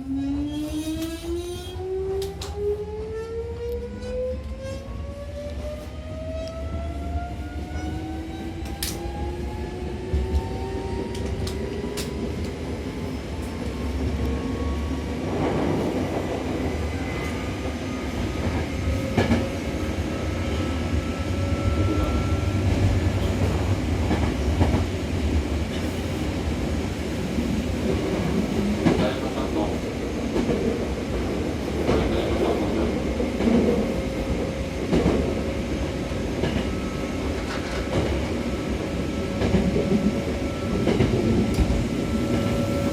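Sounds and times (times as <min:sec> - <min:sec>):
rail joint clicks: 0:00.6 - 0:04.8, 0:07.6 - 0:09.1, 0:10.1 - 0:12.7, 0:17.2 - 0:20.0, 0:31.8 - 0:38.4, 0:39.3 - 0:42.8.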